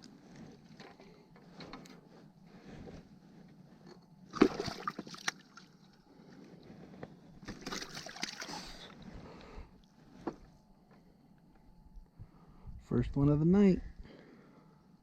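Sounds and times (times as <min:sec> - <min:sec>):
fish splashing in water: 0:04.3 - 0:05.8, 0:07.5 - 0:08.8.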